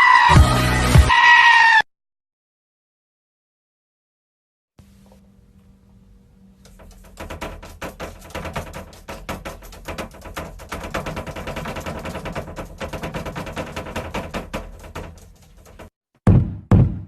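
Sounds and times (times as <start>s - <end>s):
rapid clatter of clicks: 6.6s - 15.9s.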